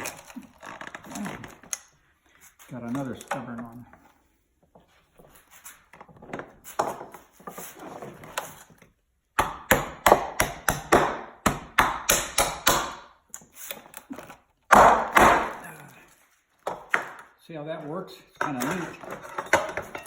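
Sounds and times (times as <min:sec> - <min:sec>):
hammer striking a mold: 0:09.4 - 0:13.2, 0:14.7 - 0:15.6.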